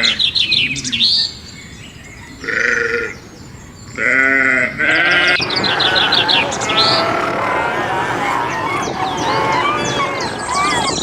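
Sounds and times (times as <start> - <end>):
sheep bleating: 2.4 - 3.1, 4.0 - 10.9.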